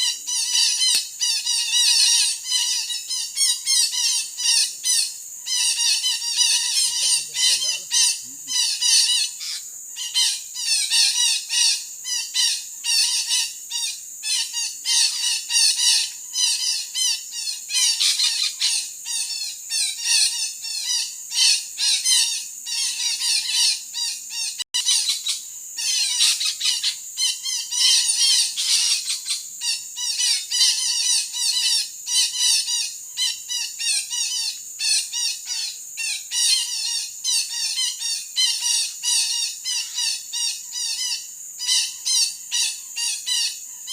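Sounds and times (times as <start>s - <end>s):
parakeets squawking: 0.0s - 9.6s.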